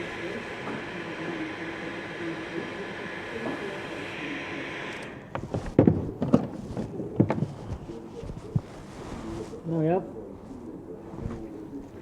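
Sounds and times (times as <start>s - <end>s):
hot air gun blowing: 0.0s - 5.3s.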